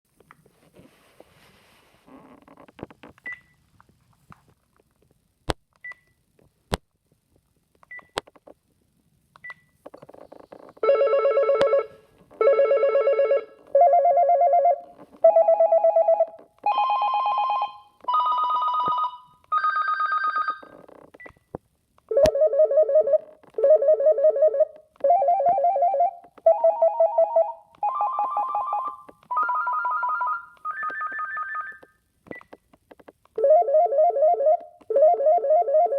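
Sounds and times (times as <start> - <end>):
electronic phone ringtone: 10.8 - 20.7, 22.1 - 31.8, 33.4 - 35.9.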